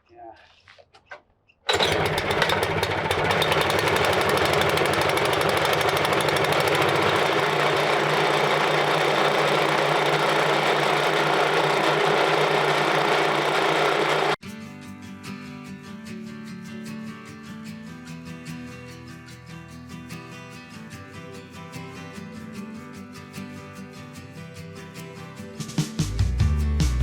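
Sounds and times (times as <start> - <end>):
sawmill gas engine running: 1.7 - 14.4.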